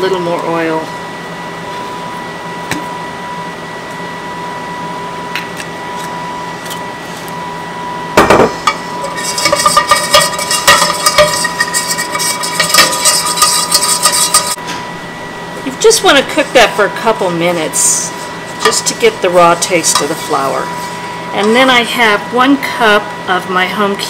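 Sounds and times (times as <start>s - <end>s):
constant whine: 0.0s - 24.0s
steady hum: 0.0s - 24.0s
whisk scraping metal pan: 8.9s - 14.6s, 18.1s - 21.7s.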